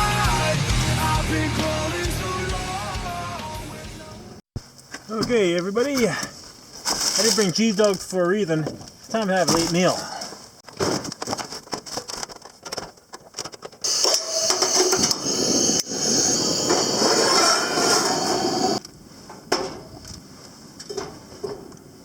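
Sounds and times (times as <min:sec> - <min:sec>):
cooking gear clicks and knocks: 0:04.7 - 0:13.8
loud hissing rustle: 0:13.9 - 0:18.8.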